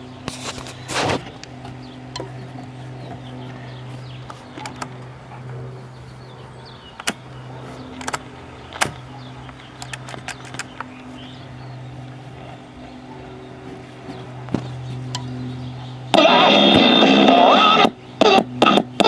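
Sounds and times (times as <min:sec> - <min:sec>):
radio speaker hum: 0:00.0 - 0:19.0
sharp clicks and crackles: 0:00.2 - 0:05.6, 0:06.9 - 0:11.4.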